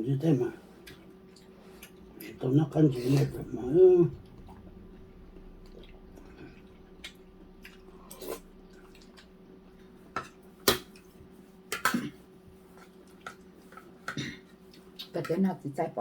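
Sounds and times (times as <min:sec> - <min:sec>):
faint steady hum: 0:00.0 - 0:16.0
person chewing: 0:00.8 - 0:02.4, 0:04.2 - 0:15.1.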